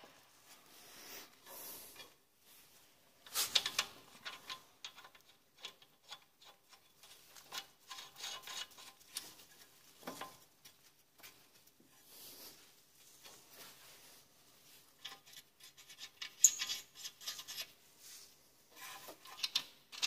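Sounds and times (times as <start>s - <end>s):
metallic clicks and scraping: 3.2s - 11.4s, 15.0s - 17.8s, 18.7s - 20.0s.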